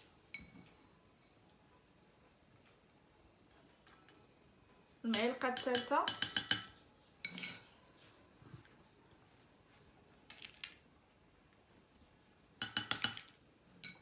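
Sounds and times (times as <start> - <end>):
spoon clinking against bottle: 12.6 - 14.0.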